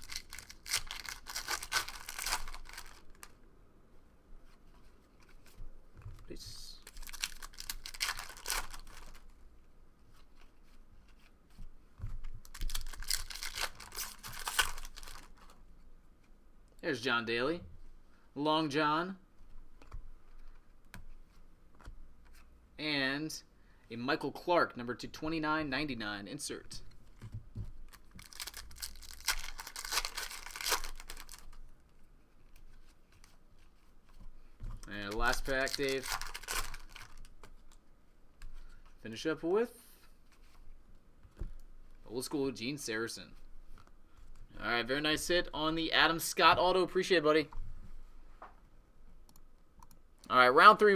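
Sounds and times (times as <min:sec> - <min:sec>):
card pack wrappers crinkling: 0:00.0 - 0:03.4, 0:06.8 - 0:09.3, 0:12.4 - 0:15.6, 0:27.9 - 0:31.7, 0:34.8 - 0:37.8
cards being handled: 0:00.0 - 0:03.4, 0:04.5 - 0:09.3, 0:10.0 - 0:15.6, 0:27.1 - 0:31.6, 0:32.3 - 0:37.8.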